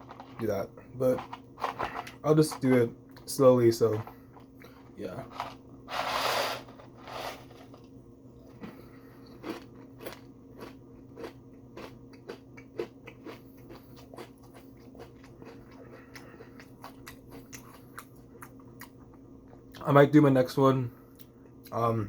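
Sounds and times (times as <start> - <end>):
person chewing crispy food: 0.0 - 2.7, 8.4 - 19.8
steady low hum: 0.0 - 22.0.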